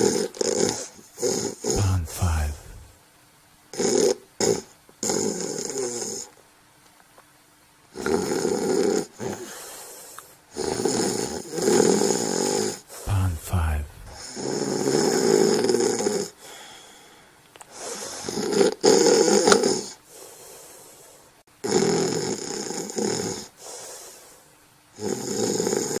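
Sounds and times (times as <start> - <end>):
quiet breathing: 1.7 - 2.9, 12.9 - 14.2, 16.4 - 18.3, 20.0 - 21.4
person snoring: 1.8 - 2.9, 13.1 - 14.2.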